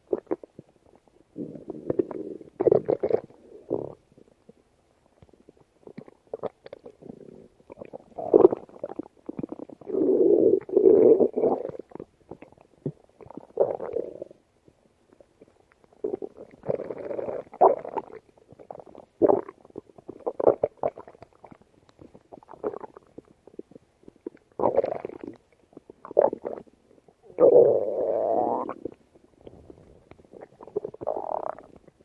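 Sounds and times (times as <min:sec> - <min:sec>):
stomach growling: 0:00.0 - 0:14.4, 0:15.1 - 0:32.0.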